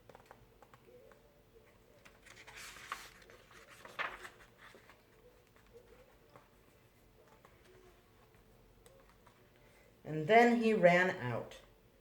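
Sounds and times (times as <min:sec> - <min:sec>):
paper page turning rustle: 0:00.1 - 0:09.5.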